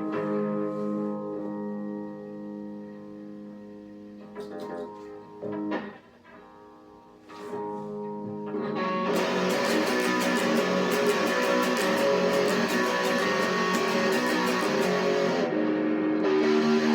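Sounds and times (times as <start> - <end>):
electric guitar through amplifier: 0.0 - 16.9
fast guitar strumming: 9.1 - 16.9.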